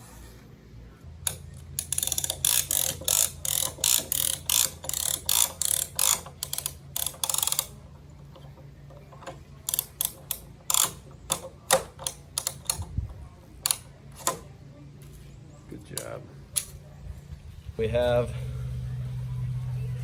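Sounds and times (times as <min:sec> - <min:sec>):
ratchet clicking: 0:01.2 - 0:14.4.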